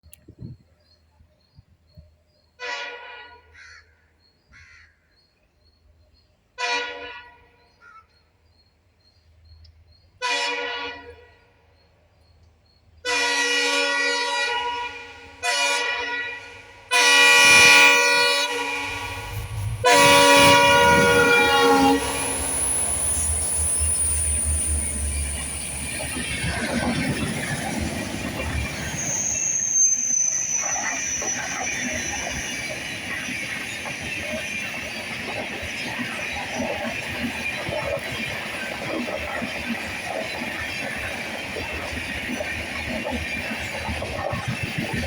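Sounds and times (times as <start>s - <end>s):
low train running noise: 5.7s - 45.0s
locomotive horns honking: 6.6s - 7.6s, 10.2s - 11.4s, 13.0s - 23.6s.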